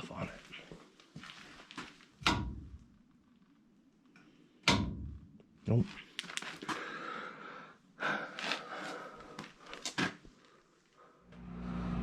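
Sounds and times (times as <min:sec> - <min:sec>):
rustling scuffs: 0:00.4 - 0:02.2.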